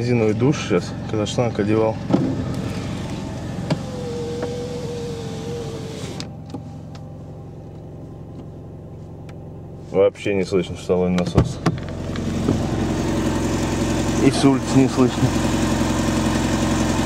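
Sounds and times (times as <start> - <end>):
car engine idling: 0.0 - 17.0
whirring hiss with wavering whine: 2.6 - 7.4.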